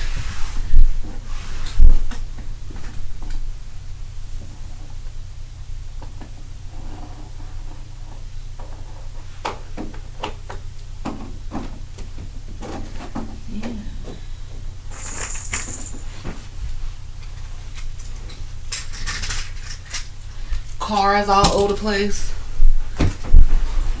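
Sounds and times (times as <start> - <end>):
small hard objects clattering: 14.9 - 16.1.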